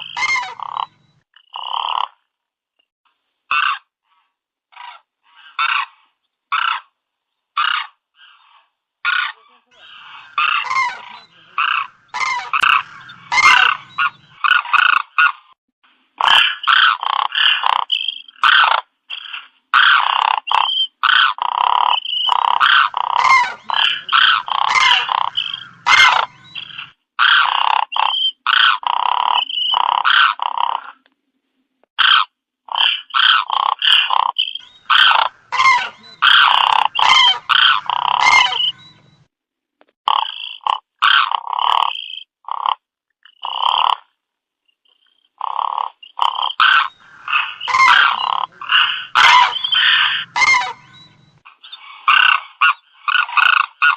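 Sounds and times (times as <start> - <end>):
flock of cranes calling: 0.0 - 0.9, 9.1 - 15.3, 22.3 - 28.8, 32.8 - 39.2, 46.2 - 53.9.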